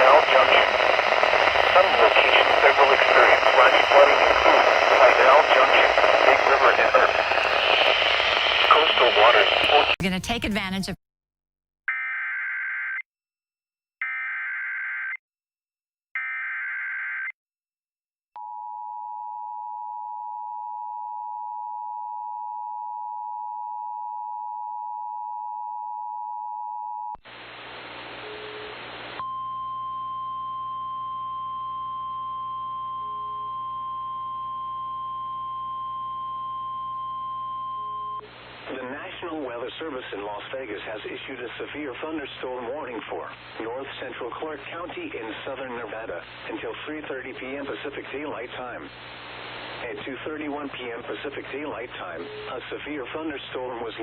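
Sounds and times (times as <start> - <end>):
data burst tones: 0.0 - 10.3
radio static burst: 0.0 - 10.9, 38.3 - 51.6.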